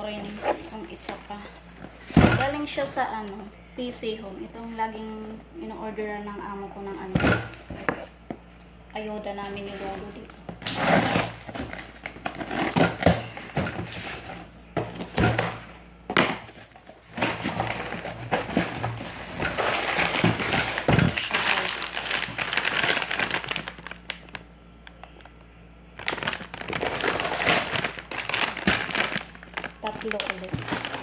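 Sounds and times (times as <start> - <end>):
plastic and cardboard crinkling: 0.0 - 3.4, 9.3 - 25.4, 26.0 - 31.0.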